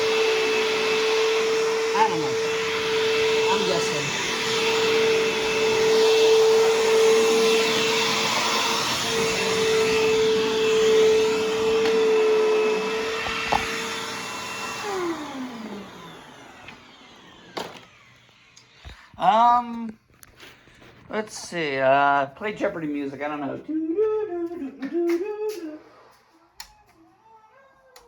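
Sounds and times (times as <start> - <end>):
vacuum cleaner winding down: 0.0 - 19.7
vacuum cleaner whining: 0.0 - 19.9.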